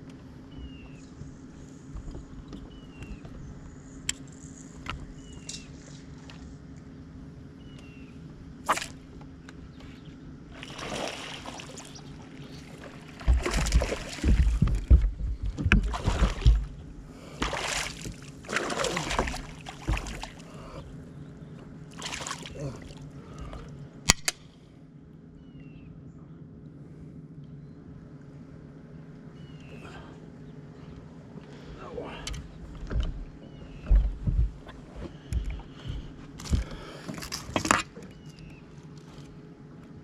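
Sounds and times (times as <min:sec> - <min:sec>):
steady low hum: 0:00.0 - 0:40.0
water splashing and sloshing: 0:08.7 - 0:09.1, 0:09.8 - 0:21.0, 0:21.9 - 0:23.8, 0:31.4 - 0:38.2.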